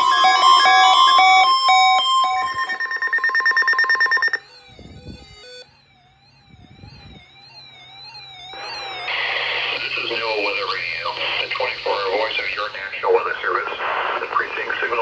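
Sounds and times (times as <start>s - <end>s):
warbling siren-like tone: 0.0s - 9.1s
rapid beeping alarm tone: 0.0s - 9.5s
radio broadcast hiss: 8.6s - 15.0s.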